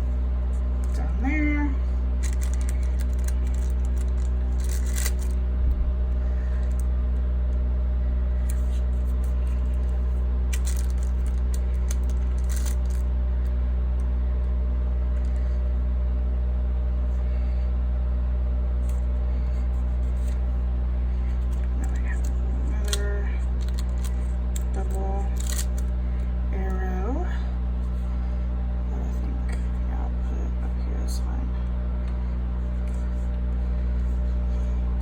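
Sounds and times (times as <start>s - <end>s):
paper crackling: 0.0s - 1.2s, 2.1s - 5.4s, 6.5s - 6.9s, 8.4s - 13.1s, 21.3s - 25.9s
steady low hum: 0.0s - 35.0s.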